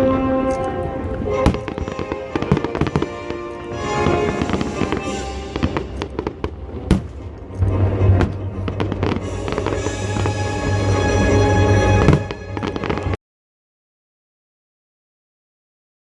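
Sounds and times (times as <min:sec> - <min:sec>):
music: 0:00.0 - 0:13.2
fireworks bangs and crackles: 0:01.3 - 0:13.2
fireworks boom: 0:04.0 - 0:07.4.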